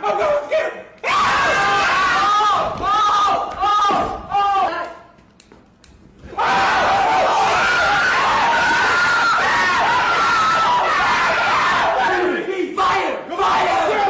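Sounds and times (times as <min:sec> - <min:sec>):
people screaming and yelling: 0:06.3 - 0:14.0.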